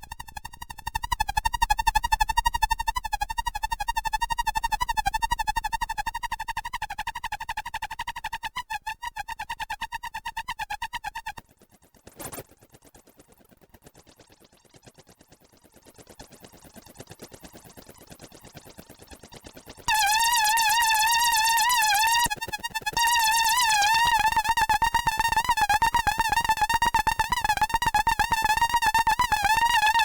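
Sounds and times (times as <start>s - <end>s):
synthesizer pulsing warbling tone: 14.0s - 22.3s.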